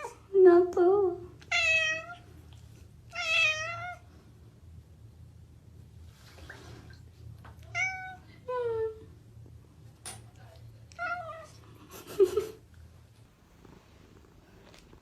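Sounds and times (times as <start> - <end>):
cat meowing: 1.5 - 2.2, 3.1 - 4.0, 7.7 - 8.2.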